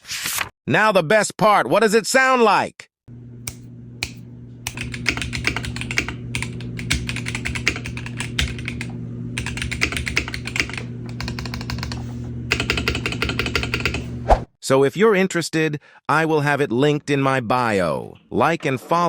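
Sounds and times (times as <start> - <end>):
rapid keyboard typing: 4.0 - 14.1.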